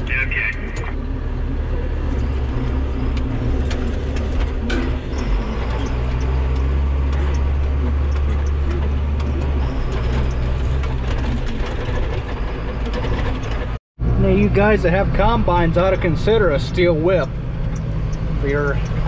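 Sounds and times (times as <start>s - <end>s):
tractor diesel engine running: 0.0s - 19.0s
light rattles and clicks: 3.1s - 13.8s.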